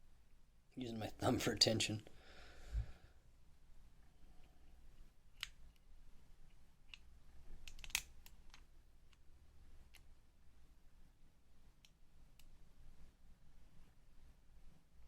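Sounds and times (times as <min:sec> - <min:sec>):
metallic clicks of lock pick: 0:06.9 - 0:09.2.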